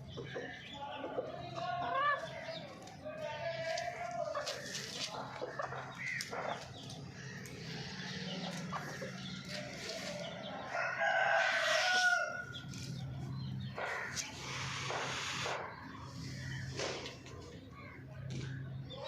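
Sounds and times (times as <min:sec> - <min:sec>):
chickens clucking: 0:00.0 - 0:19.0
rooster crowing: 0:10.6 - 0:12.5.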